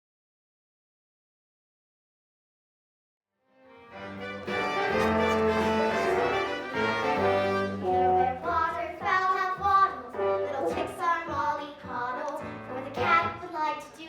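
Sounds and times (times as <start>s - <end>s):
musical accompaniment with brass: 3.6s - 8.7s, 10.0s - 11.0s.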